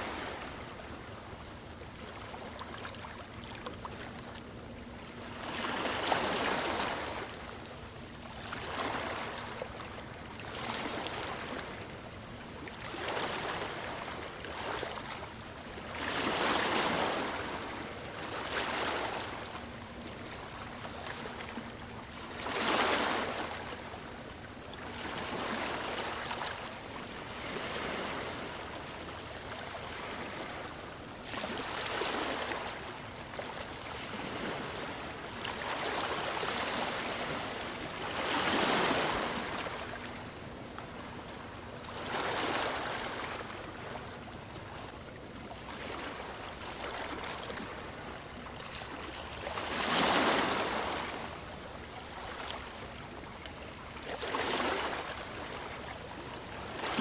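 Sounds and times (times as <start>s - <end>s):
ocean waves breaking: 8.5s - 9.7s, 16.0s - 24.2s, 24.9s - 44.9s, 45.7s - 57.0s.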